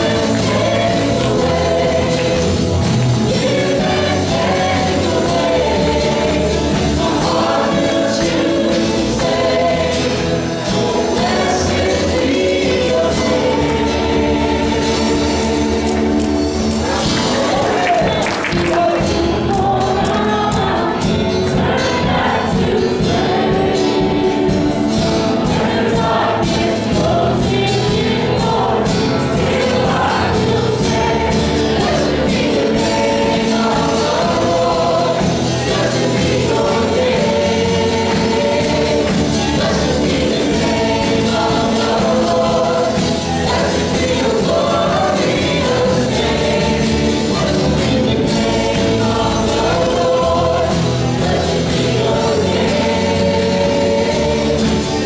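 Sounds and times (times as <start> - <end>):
band accompaniment with beat: 0.0 - 55.0
group singing worship song: 0.0 - 55.0.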